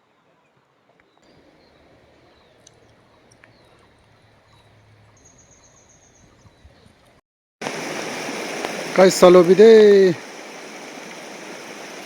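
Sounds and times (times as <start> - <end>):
faint bird chirps: 0.4 - 7.0
river water rushing: 7.6 - 12.0.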